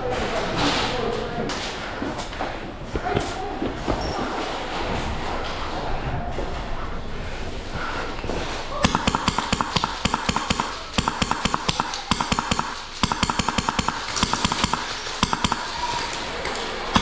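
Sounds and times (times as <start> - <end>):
airsoft gun full-auto bursts: 8.8 - 16.3.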